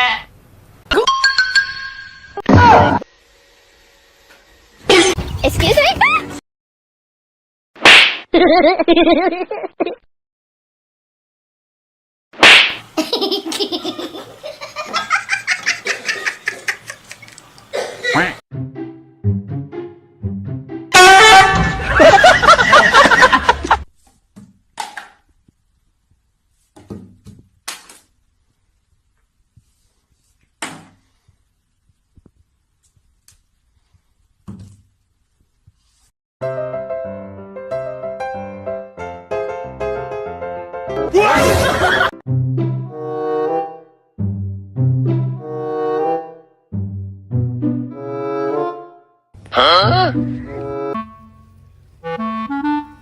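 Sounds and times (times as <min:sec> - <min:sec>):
faint clicks: 0:17.1 - 0:17.7.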